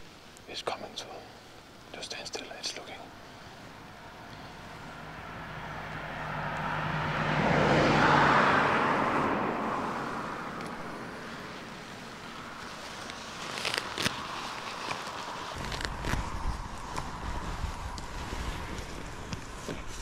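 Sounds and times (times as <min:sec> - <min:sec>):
car driving past: 0:03.8 - 0:13.0.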